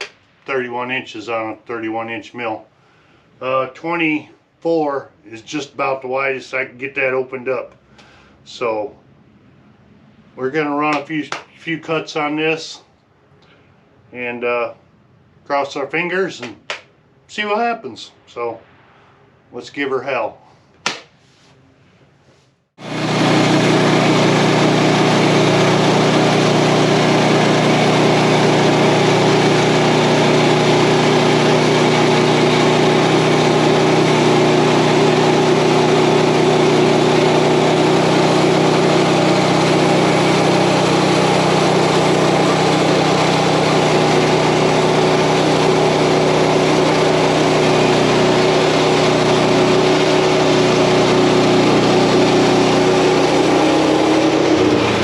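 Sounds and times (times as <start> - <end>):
sawmill gas engine running: 22.8 - 55.0.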